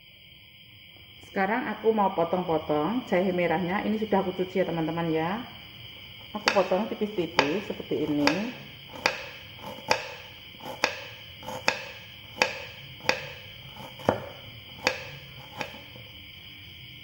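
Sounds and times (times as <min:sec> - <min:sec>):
knife chopping ginger: 0:06.4 - 0:16.1.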